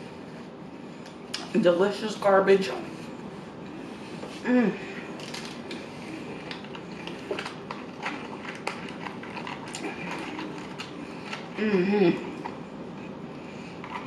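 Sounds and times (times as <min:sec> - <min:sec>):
person humming: 0:04.4 - 0:05.0, 0:11.6 - 0:12.3
person chewing food: 0:05.0 - 0:14.0.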